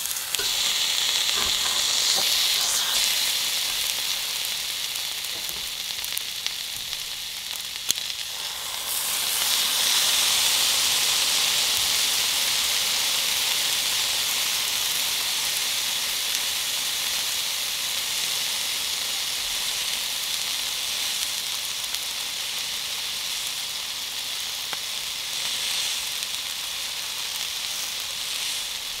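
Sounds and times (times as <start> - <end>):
sharp pops of frying: 0.0 - 12.0
food sizzling: 0.0 - 29.0.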